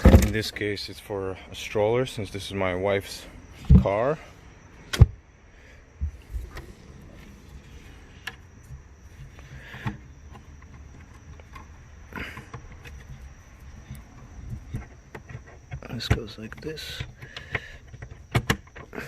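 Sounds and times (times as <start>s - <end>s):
parts clicking and knocking: 0.0s - 0.6s, 6.0s - 19.0s
faint high whine: 0.0s - 17.7s.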